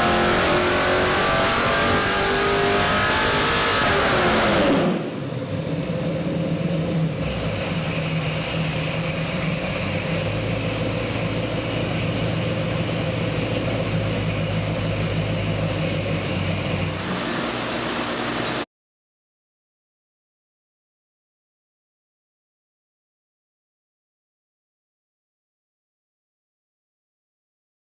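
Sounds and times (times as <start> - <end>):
vee-eight engine idling: 5.1 - 18.6.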